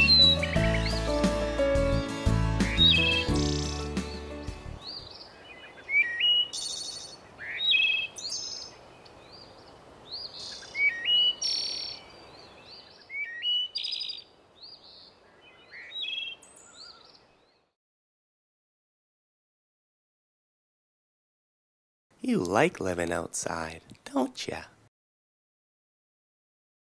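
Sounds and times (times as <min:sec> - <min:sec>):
birds chirping and whistling: 0:00.0 - 0:01.6, 0:02.6 - 0:17.6.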